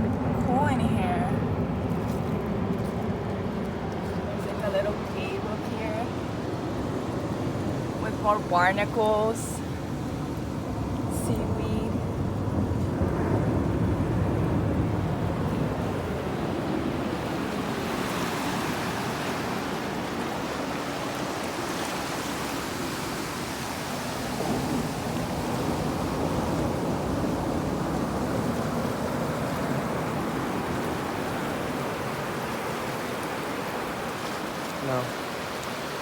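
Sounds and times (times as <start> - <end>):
ocean surf on rocky shore: 0.0 - 36.0
wind rumble on microphone: 0.0 - 36.0.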